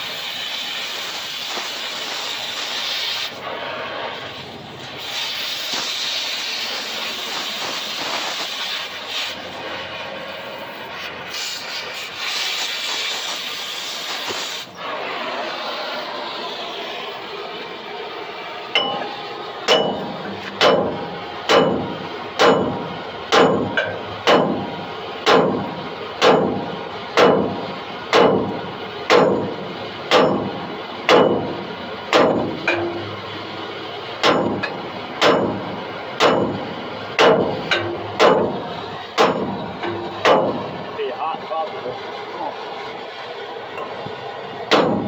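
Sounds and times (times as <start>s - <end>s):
hammer striking metal: 18.8s - 33.4s, 34.2s - 40.7s, 44.7s - 45.0s.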